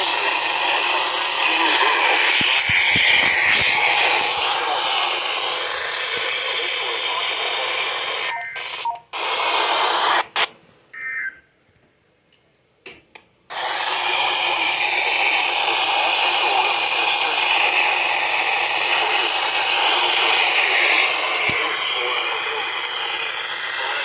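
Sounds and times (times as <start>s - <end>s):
radio static hiss: 0.0s - 11.1s, 13.5s - 24.0s
brief tone: 8.3s - 9.0s, 11.0s - 11.5s.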